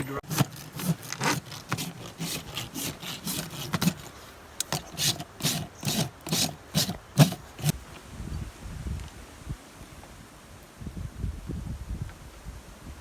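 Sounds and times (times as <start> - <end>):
rasp filing a hoof: 0.2 - 7.8.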